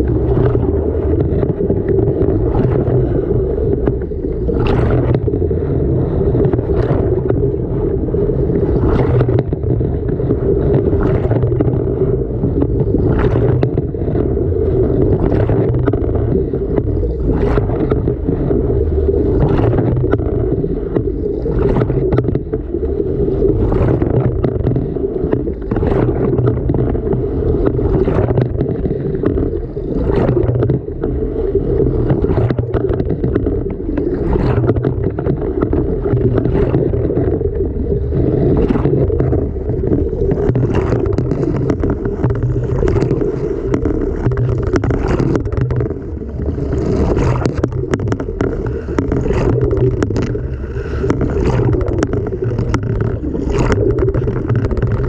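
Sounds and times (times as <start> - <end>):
low motor hum: 0.0 - 55.0
water sloshing in washing machine: 12.6 - 13.9, 19.4 - 20.2, 21.5 - 22.5, 23.5 - 27.0, 27.6 - 29.4, 32.1 - 37.6, 38.5 - 50.4, 51.1 - 55.0.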